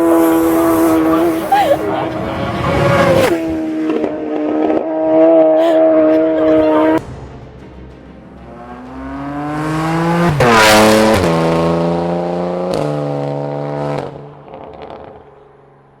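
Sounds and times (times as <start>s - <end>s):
racing motorcycle passing by: 0.0s - 7.0s.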